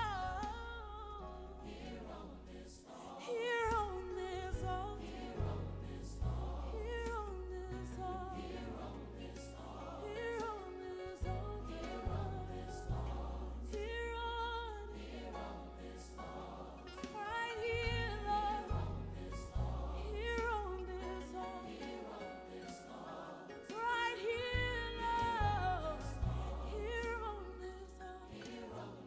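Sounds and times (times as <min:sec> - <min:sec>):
voices singing worship song: 0:00.0 - 0:29.0.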